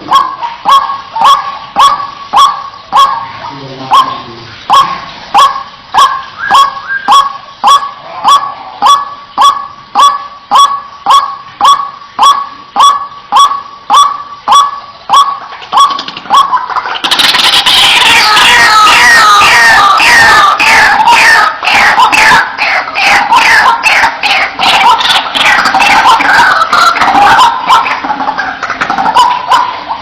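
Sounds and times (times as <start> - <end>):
chorus of harsh bird calls: 0.0 - 30.0
bird calling sharp note: 0.1 - 17.6.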